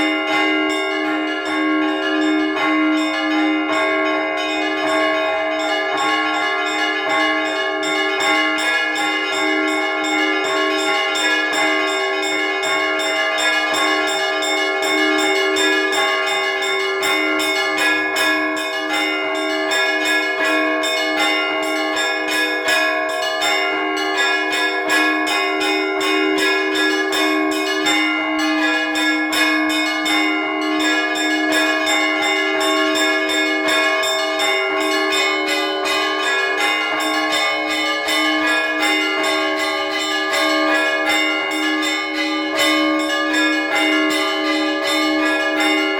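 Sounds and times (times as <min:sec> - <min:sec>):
deep bells striking: 0:00.0 - 0:45.9
small high bells chiming: 0:00.0 - 0:45.9.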